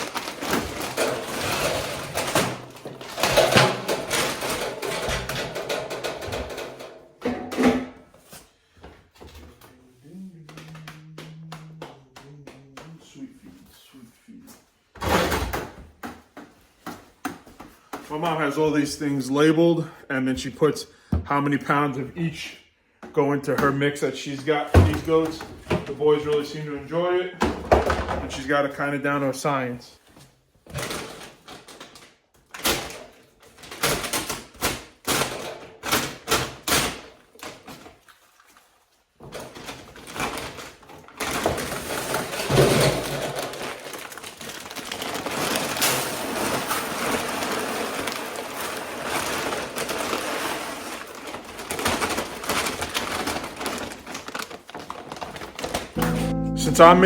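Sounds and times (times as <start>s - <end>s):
containers and scoops clattering: 0.0s - 8.0s, 39.3s - 56.2s.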